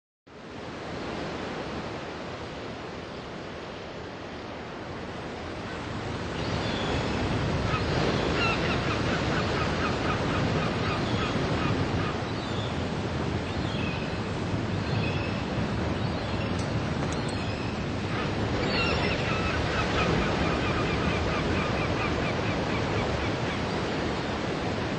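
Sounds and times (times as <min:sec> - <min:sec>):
gulls calling: 0:05.6 - 0:24.9.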